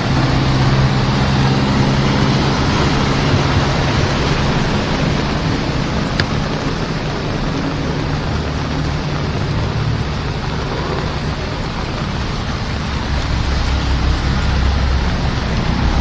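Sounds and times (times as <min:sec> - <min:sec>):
heavy rain: 0:00.0 - 0:16.0
vehicle driving rumble: 0:00.0 - 0:16.0.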